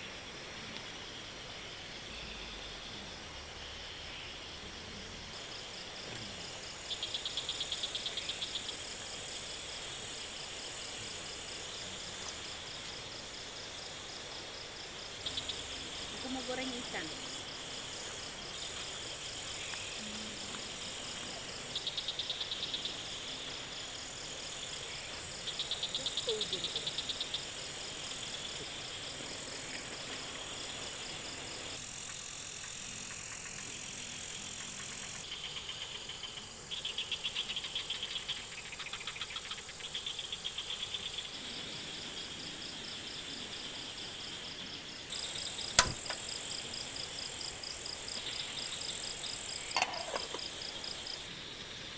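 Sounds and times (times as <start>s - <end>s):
insects buzzing and chirring: 0.0s - 51.9s
rapidly pulsing insect calls: 0.0s - 51.9s
sharp click: 45.7s - 46.2s.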